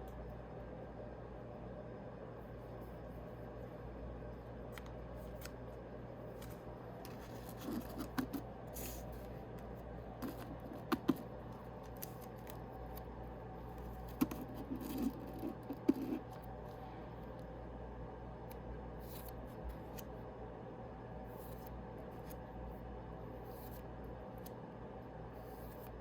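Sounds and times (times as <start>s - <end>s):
steady low hum: 0.0s - 26.0s
cards rustling and clicking: 6.3s - 16.5s.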